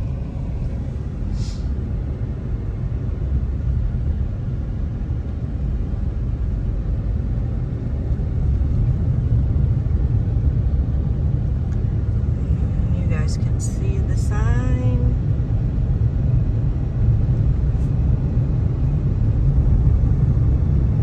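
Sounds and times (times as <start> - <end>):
car driving rumble: 0.0 - 21.0
brief hiss: 1.3 - 1.7.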